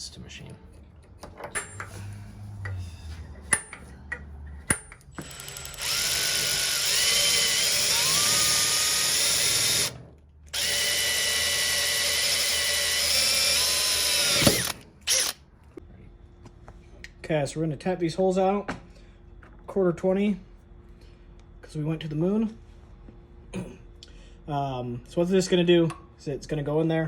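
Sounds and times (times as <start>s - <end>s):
power drill drilling into metal: 5.2s - 15.4s.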